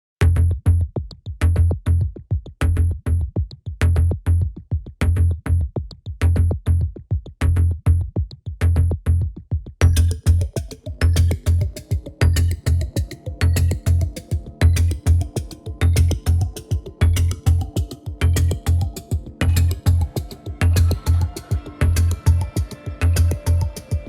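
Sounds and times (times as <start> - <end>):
electronic music with drum beat: 9.8 - 24.0.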